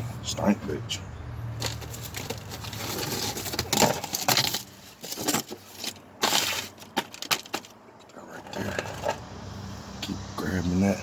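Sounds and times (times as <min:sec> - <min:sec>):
rustling: 0:01.6 - 0:09.2.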